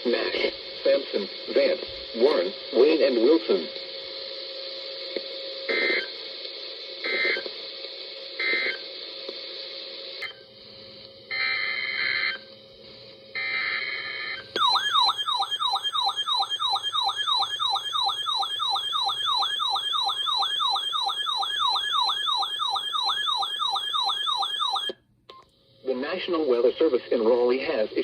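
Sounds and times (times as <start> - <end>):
siren-like alert tone: 14.6 - 25.0.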